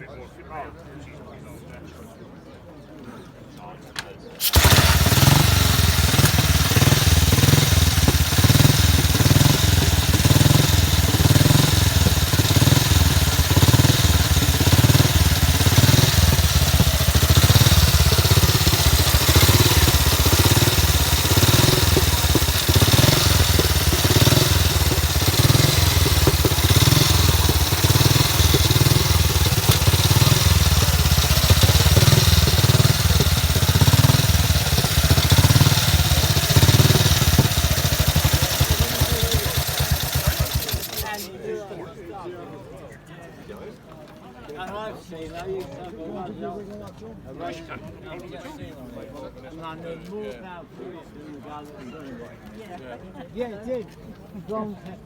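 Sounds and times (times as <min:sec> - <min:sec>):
motorcycle engine idling: 0:04.4 - 0:41.4.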